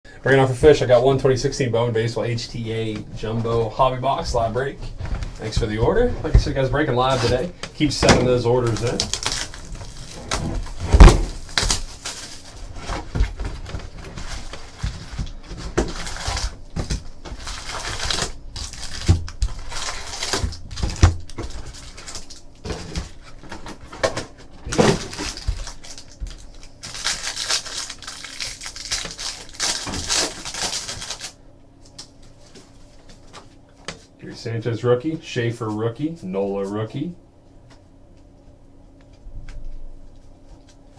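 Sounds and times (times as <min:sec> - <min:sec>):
foil wrappers crinkling and tearing: 0:05.4 - 0:23.9, 0:24.6 - 0:33.6.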